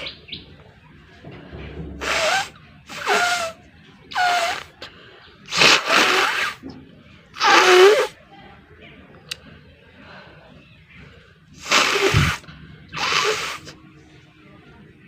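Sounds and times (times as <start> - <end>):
person sneezing: 2.0 - 4.7, 7.4 - 8.1, 11.6 - 12.4, 13.0 - 13.7.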